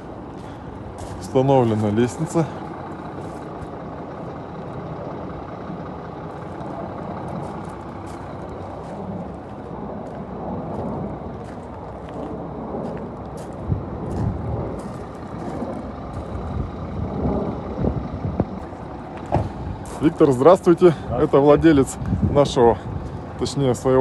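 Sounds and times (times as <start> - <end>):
engine running steadily: 0.0 - 24.0.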